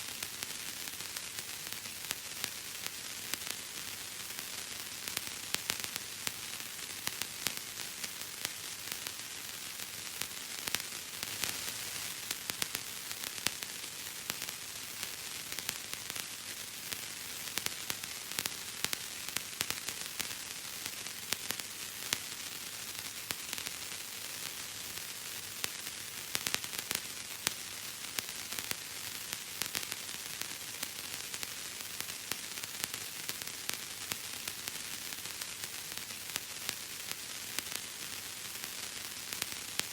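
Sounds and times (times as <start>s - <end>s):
steady hiss: 0.0s - 39.9s.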